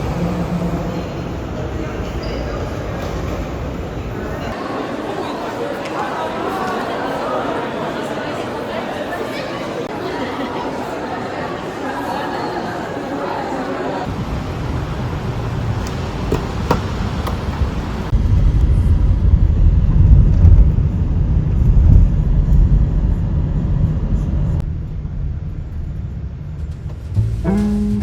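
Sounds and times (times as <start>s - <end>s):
car road and engine rumble: 14.1s - 27.6s.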